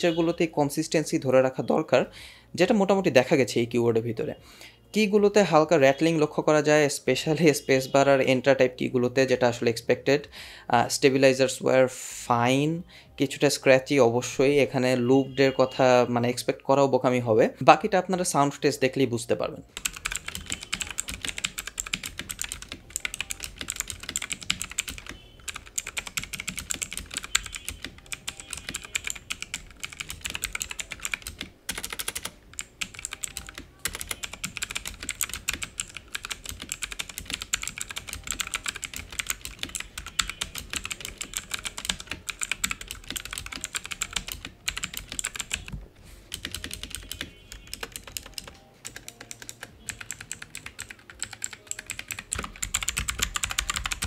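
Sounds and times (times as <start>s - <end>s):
fast typing on clicky keyboard: 19.7s - 45.7s, 46.3s - 54.0s.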